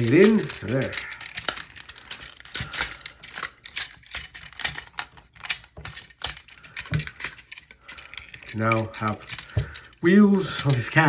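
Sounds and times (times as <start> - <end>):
plastic parts clicking and snapping: 0.0 - 11.0.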